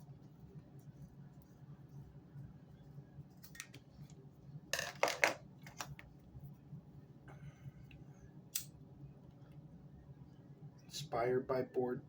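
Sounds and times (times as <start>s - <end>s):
low steady hum: 0.0s - 12.0s
hands handling cord clicks and rustles: 3.4s - 6.1s.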